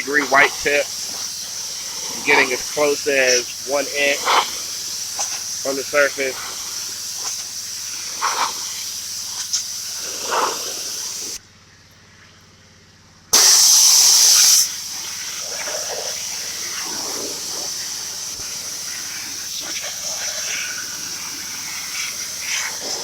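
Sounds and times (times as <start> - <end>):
pressure washer spray hissing: 0.0 - 11.4, 13.4 - 23.0.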